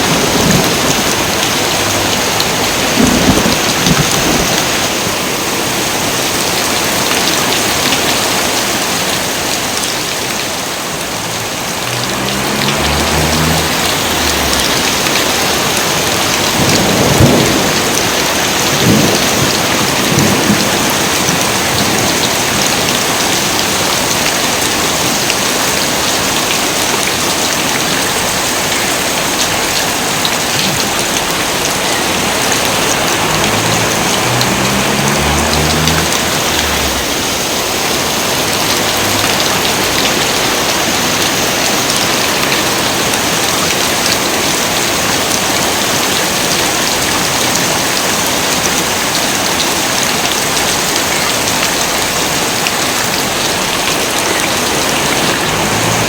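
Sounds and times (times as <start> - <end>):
thunder rumbling: 0.0 - 5.1, 11.0 - 22.9, 30.7 - 41.4
heavy rain pouring: 0.0 - 56.0.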